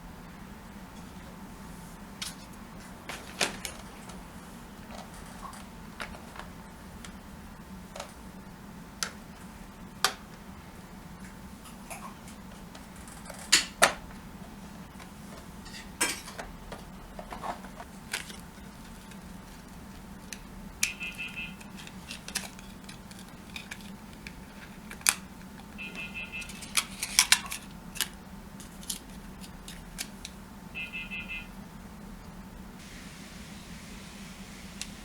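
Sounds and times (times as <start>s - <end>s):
faint steady hum: 0.0s - 35.0s.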